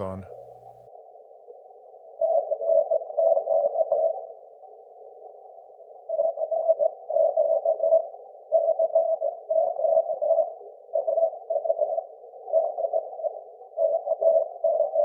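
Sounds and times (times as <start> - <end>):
hoarse morse code tone: 0.0 - 0.8
low filtered radio hiss: 0.0 - 0.8.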